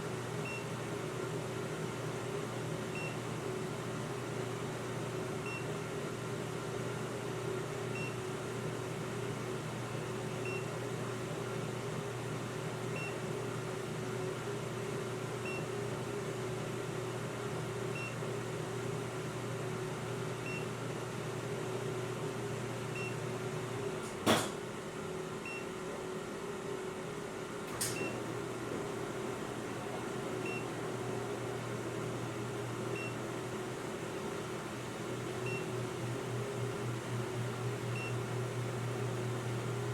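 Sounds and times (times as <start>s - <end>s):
electrical hum: 27.7s - 39.9s.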